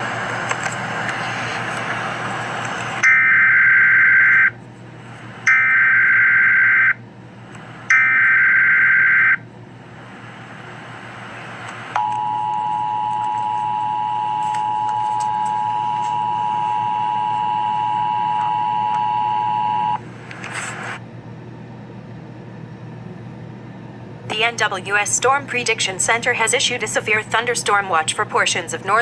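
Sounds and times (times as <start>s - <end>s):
two-tone attention signal: 12.0s - 20.0s.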